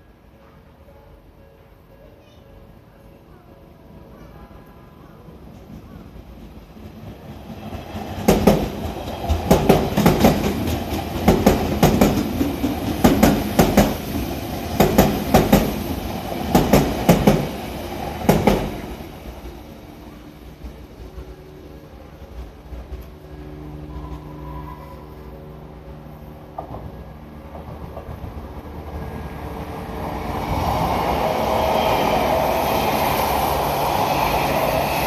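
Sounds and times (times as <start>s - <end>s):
train rumble: 0.0s - 35.0s
train wheels clattering over rail joints: 6.4s - 17.6s.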